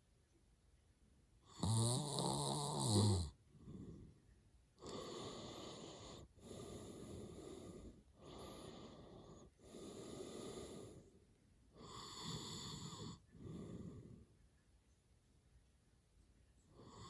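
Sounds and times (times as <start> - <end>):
man snoring hard: 1.5 - 3.3.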